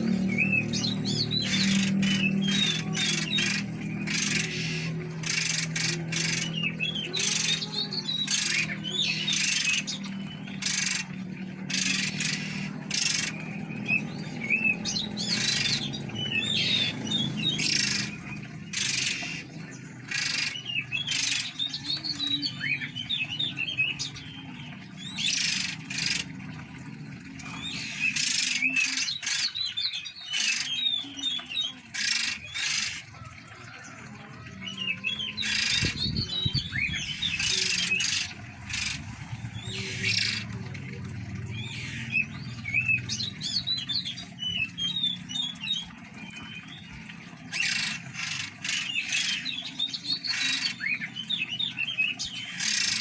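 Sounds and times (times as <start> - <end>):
birds chirping and whistling: 0.0 - 53.0
low steady hum: 21.9 - 28.0.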